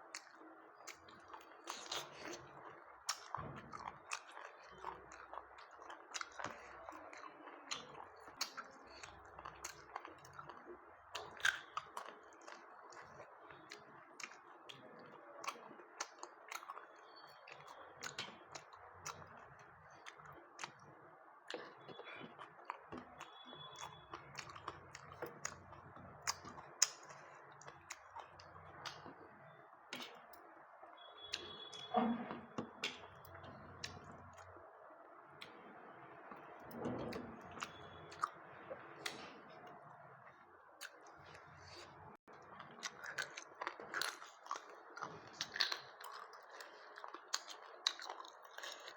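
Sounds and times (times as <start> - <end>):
person chewing food: 0.0 - 34.7, 36.3 - 48.9
wet mouth clicks and smacks: 42.6 - 48.9.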